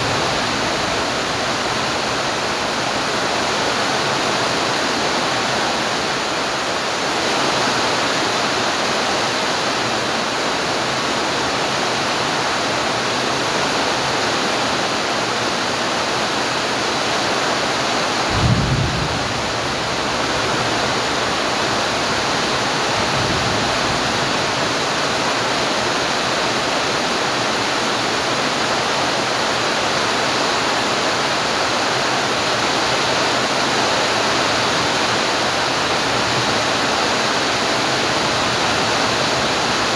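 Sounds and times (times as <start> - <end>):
steady rain falling: 0.0 - 39.9
low thump: 18.3 - 22.0.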